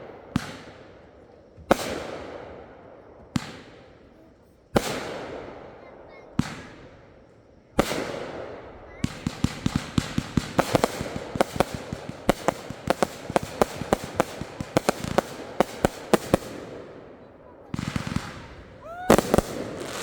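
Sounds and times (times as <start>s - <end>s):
fireworks popping and crackling: 0.0s - 4.0s, 4.7s - 7.0s, 7.8s - 20.0s
firework bang: 17.7s - 20.0s.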